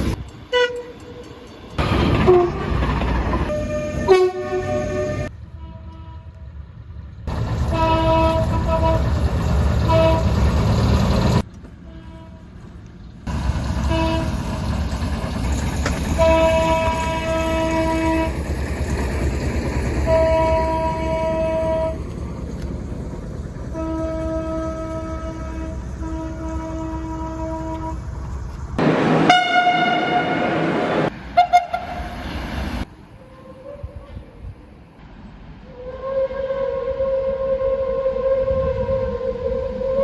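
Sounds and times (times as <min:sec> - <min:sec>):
rumble of passing trains: 0:00.0 - 0:40.0
train horn blasts: 0:00.5 - 0:01.2, 0:02.2 - 0:02.8, 0:03.5 - 0:06.5, 0:07.7 - 0:09.2, 0:09.8 - 0:10.4, 0:11.8 - 0:12.6, 0:13.8 - 0:14.4, 0:16.2 - 0:18.4, 0:20.1 - 0:22.0, 0:23.7 - 0:28.1, 0:28.8 - 0:32.2.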